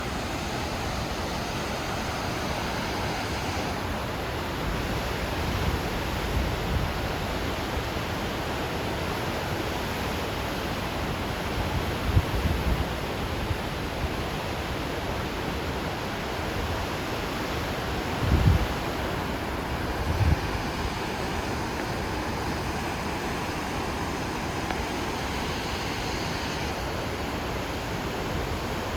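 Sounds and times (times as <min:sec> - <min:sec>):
water rushing from dam: 0:00.0 - 0:28.9
wind buffeting microphone: 0:18.1 - 0:27.0.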